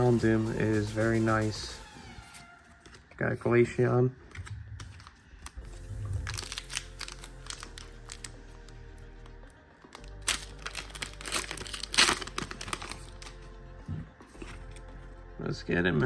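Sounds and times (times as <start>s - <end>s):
background music: 0.0s - 16.0s
foil wrapper crinkling and tearing: 4.4s - 8.8s, 9.9s - 13.4s.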